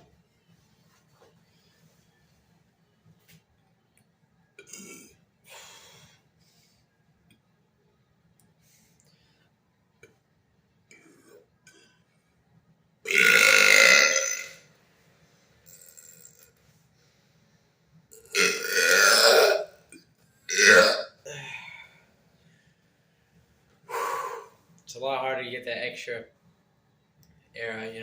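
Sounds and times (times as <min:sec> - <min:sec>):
man burping loudly: 0:04.6 - 0:05.1, 0:13.1 - 0:14.6, 0:18.2 - 0:19.7, 0:20.5 - 0:21.5.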